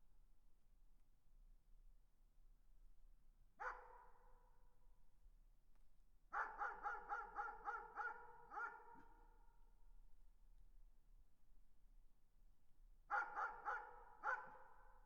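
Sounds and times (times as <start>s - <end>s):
distant dog barking: 3.6s - 4.0s, 6.4s - 9.0s, 13.1s - 14.6s.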